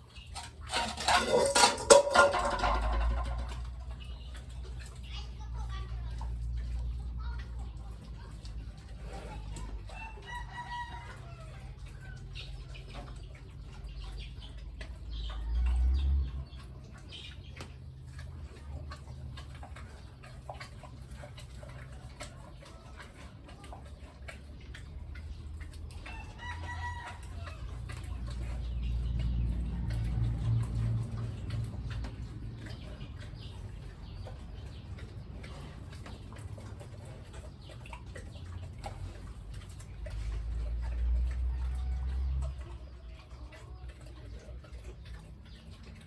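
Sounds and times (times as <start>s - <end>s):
chickens clucking: 0.0s - 46.0s
rooster crowing: 9.9s - 11.6s, 26.1s - 27.7s.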